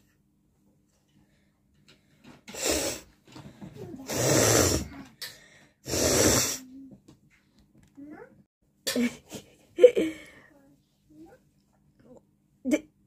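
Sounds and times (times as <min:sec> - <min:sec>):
person blowing air through nose: 0:02.5 - 0:03.1, 0:04.1 - 0:05.0, 0:05.8 - 0:06.7
breathy sniffing: 0:02.5 - 0:03.2, 0:04.0 - 0:06.7.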